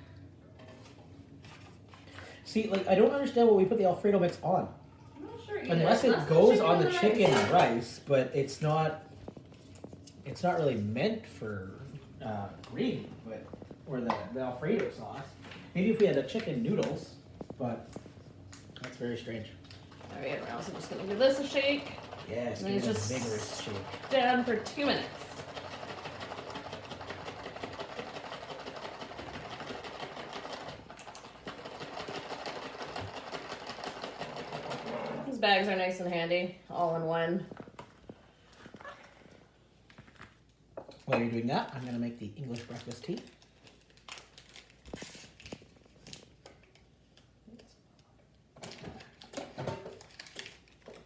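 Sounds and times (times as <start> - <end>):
packets and cups being handled: 39.9 - 46.8.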